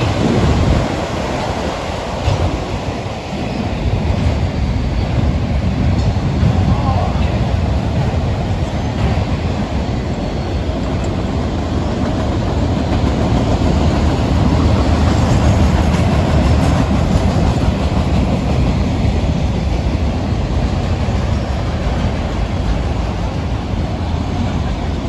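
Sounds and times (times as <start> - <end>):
freight train wheels rumbling: 0.0 - 25.0.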